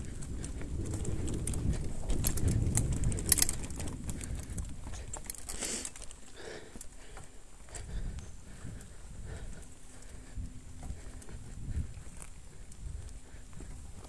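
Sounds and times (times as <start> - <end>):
bike tyre rumble: 0.0 - 14.0
rattling clicks: 1.4 - 6.2.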